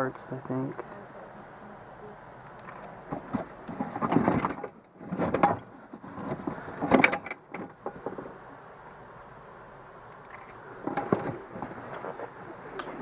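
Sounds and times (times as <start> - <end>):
stored items clattering and scraping: 3.1 - 8.4, 10.8 - 13.0.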